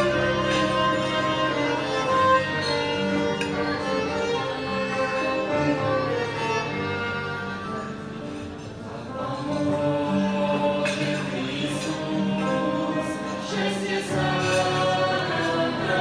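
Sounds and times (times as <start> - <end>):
violin melody: 0.0 - 10.8.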